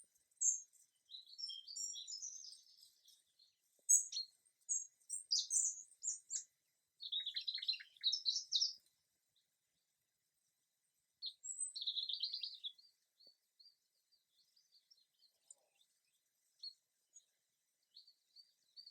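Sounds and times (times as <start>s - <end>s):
songbirds chirping and trilling: 0.0s - 18.9s
faint high twittering: 0.4s - 8.8s.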